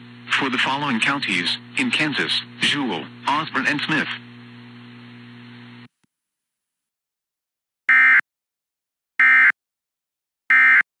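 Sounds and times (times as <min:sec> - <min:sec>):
faint broadcast line hum: 0:00.0 - 0:05.9.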